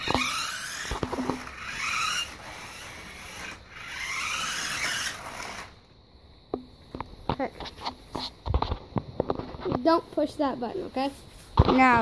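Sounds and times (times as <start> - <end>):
toy car electric motor whining: 0.0 - 5.8.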